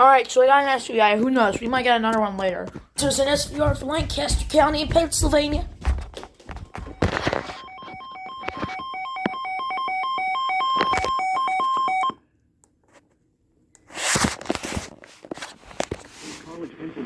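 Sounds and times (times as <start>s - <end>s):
emergency alert warble tone: 6.8s - 12.2s.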